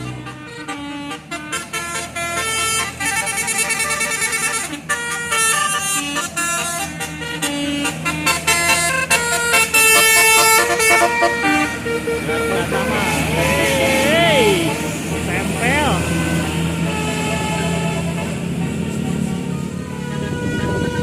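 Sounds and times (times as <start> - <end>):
bus air horns playing melody: 0.0 - 21.0.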